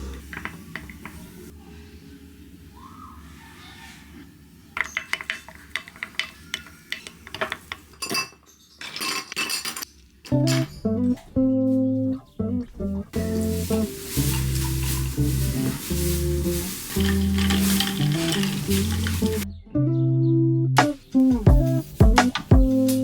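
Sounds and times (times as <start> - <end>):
dishes and utensils clinking: 0.0 - 1.3, 4.8 - 11.3, 13.2 - 19.4
guitar music: 10.3 - 23.0.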